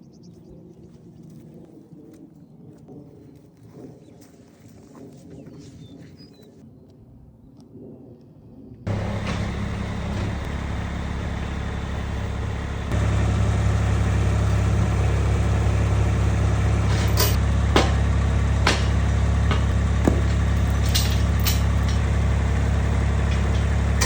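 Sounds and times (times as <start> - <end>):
vehicle engine idling: 8.9 - 24.0.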